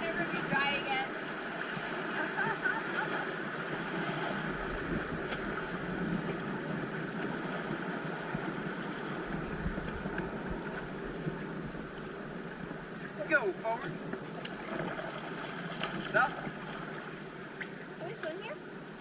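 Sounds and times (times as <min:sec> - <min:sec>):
boat motor running: 0:00.0 - 0:19.0
water noise: 0:00.0 - 0:19.0
wind noise on microphone: 0:03.1 - 0:13.0.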